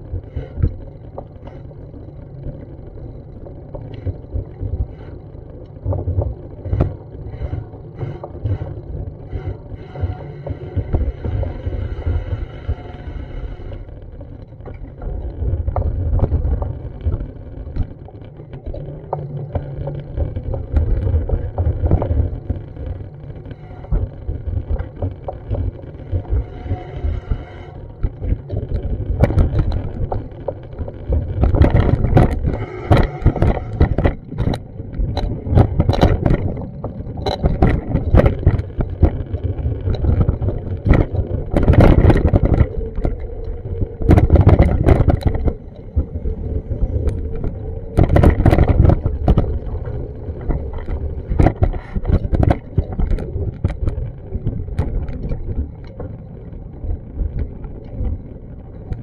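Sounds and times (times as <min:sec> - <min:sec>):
wind buffeting microphone: 0:31.2 - 0:58.2.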